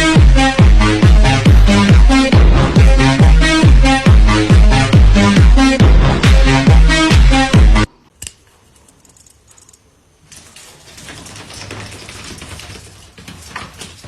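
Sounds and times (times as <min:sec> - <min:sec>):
electronic dance music: 0:00.0 - 0:07.9
low hum: 0:01.4 - 0:05.2.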